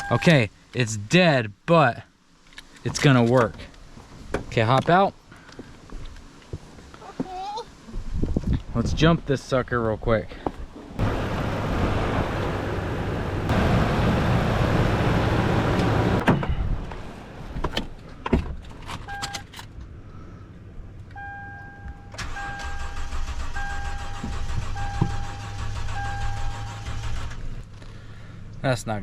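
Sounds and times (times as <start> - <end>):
dashboard warning chime: 0.0 - 0.4, 21.2 - 26.9
engine cranking by starter: 22.1 - 27.6.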